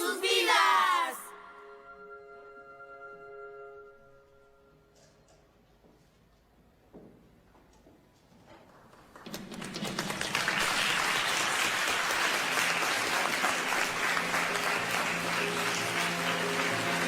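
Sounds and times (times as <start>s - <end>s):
soft music: 0.0s - 6.0s, 12.2s - 17.0s
audience applause: 8.8s - 17.0s.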